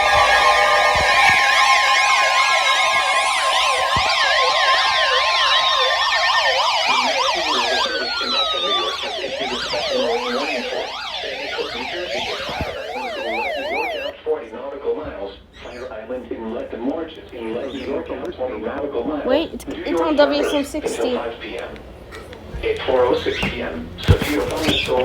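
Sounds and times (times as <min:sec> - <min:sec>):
steady high alert tone: 0:00.0 - 0:14.1
warbling emergency alert sirens: 0:00.0 - 0:14.3, 0:19.6 - 0:23.9.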